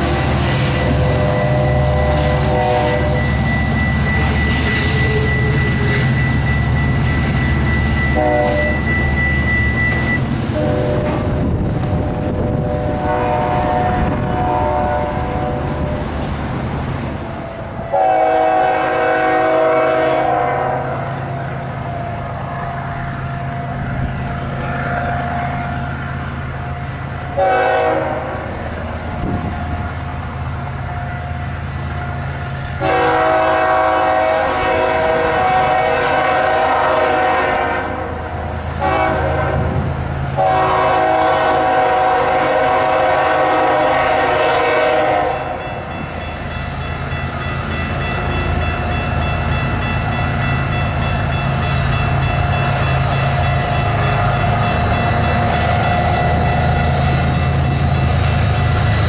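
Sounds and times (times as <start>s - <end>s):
train rumbling: 0.0s - 59.0s
diesel locomotive horn blasts: 0.6s - 6.8s, 7.7s - 16.2s, 17.2s - 29.8s, 30.8s - 46.2s.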